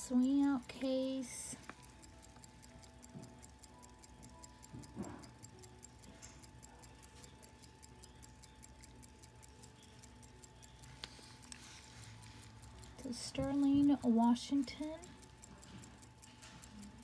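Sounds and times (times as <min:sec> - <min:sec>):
pocket watch ticking: 0:00.0 - 0:17.0
soft handling rustle: 0:10.8 - 0:13.5.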